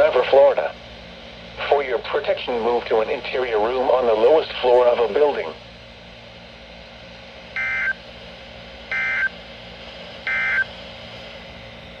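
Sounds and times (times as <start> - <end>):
short digital data bursts: 8.9 - 9.3, 10.3 - 10.7.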